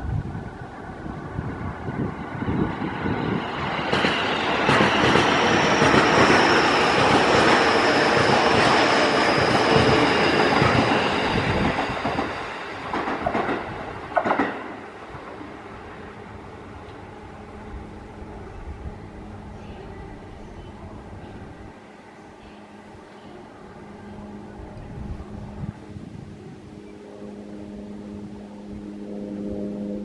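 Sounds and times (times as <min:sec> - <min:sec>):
high whine: 0:00.0 - 0:13.0, 0:14.9 - 0:30.0
electric train passing: 0:00.0 - 0:30.0.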